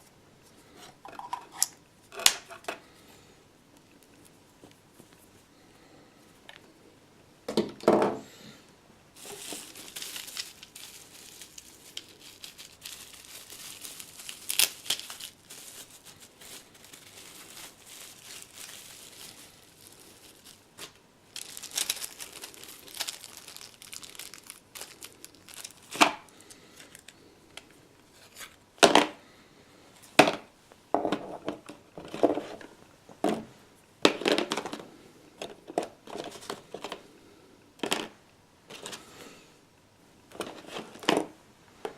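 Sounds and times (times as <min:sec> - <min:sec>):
packaging crinkling and tearing: 0:09.2 - 0:27.2.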